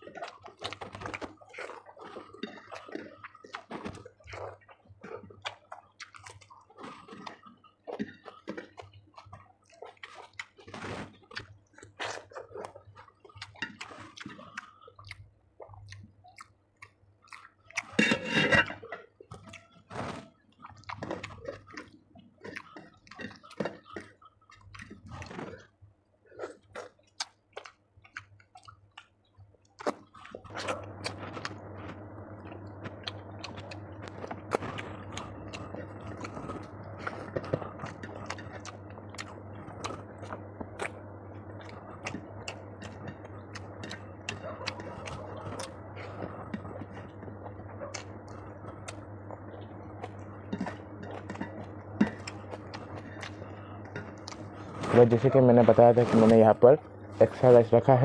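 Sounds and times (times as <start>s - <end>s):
chewing and wet mouth sounds: 0.0s - 58.0s
steady hum: 18.0s - 19.0s, 30.3s - 58.0s.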